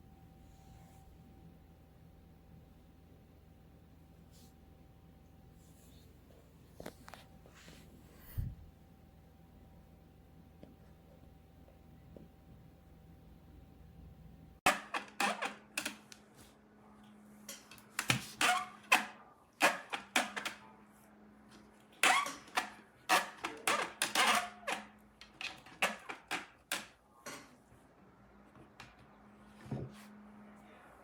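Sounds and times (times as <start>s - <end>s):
faint steady hum: 0.0s - 14.6s.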